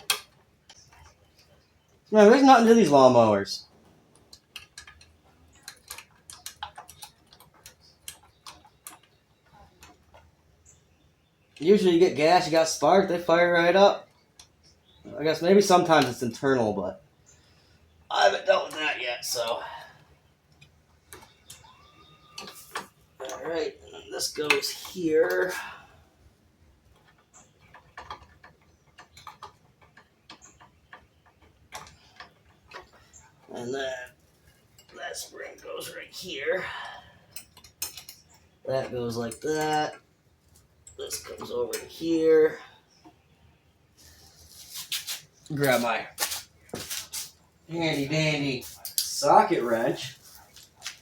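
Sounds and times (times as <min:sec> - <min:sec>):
small parts clicking and tapping: 0:00.0 - 0:02.0, 0:03.8 - 0:10.4, 0:14.1 - 0:15.0, 0:26.6 - 0:35.0, 0:37.3 - 0:42.0.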